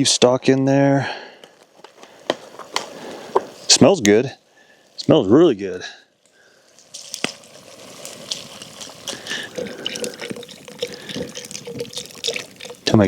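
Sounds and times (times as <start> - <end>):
liquid pouring and splashing into pot: 6.3 - 13.0.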